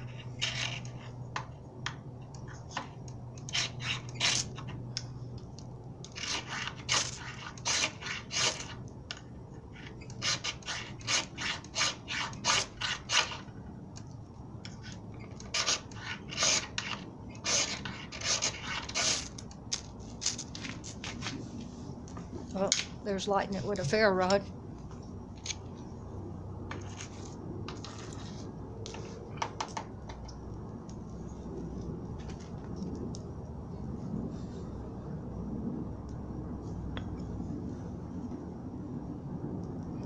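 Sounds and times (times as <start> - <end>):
ferro rod rasping scrapes: 0.0 - 1.2, 2.4 - 4.8, 6.0 - 8.8, 9.8 - 13.5, 14.7 - 19.4, 26.7 - 29.2
low steady hum: 0.0 - 40.0.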